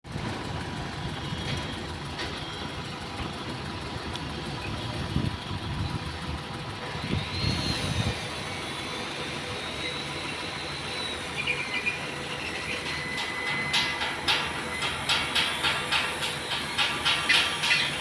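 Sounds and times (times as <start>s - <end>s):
truck engine idling: 0.1s - 18.0s
faint high whine: 7.0s - 14.0s
knocks and clanks: 12.5s - 18.0s.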